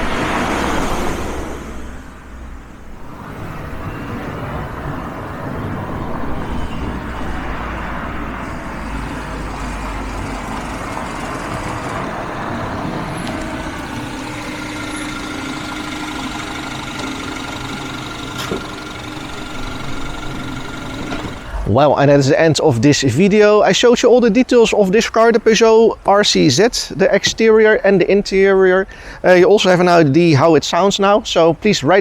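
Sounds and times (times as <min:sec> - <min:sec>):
car engine rumbling: 0:00.0 - 0:23.0.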